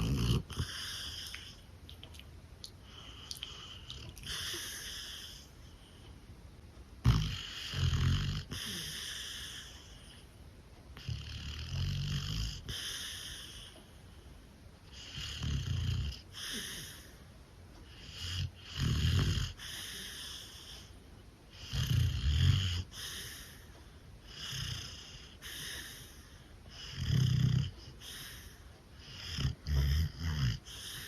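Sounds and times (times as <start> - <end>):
dog snoring: 0.0 - 1.6, 2.9 - 5.5, 7.0 - 10.2, 11.0 - 13.8, 14.9 - 17.2, 17.8 - 31.0
dog breathing: 0.0 - 1.7, 2.8 - 6.2, 7.0 - 10.4, 11.0 - 31.0.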